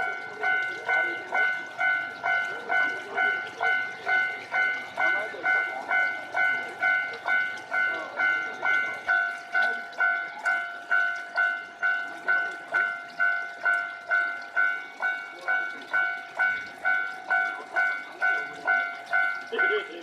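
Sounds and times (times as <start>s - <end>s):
level crossing bell ringing: 0.0s - 20.0s.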